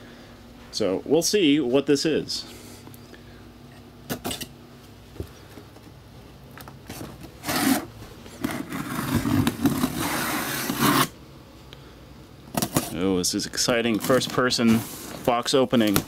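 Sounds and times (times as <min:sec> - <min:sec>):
cardboard rubbing and scraping: 0:06.9 - 0:11.2, 0:14.0 - 0:15.3.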